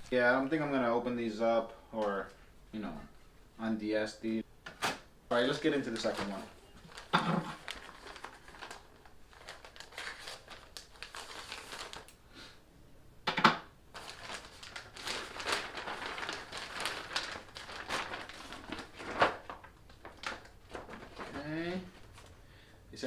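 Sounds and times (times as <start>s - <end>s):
packaging crinkling: 5.4s - 12.2s, 13.9s - 22.4s.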